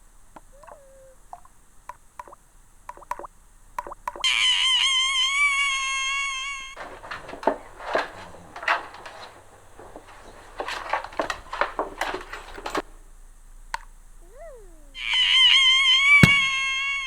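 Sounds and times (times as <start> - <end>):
clatters rustles and knocks: 6.8 - 13.0, 15.6 - 16.8.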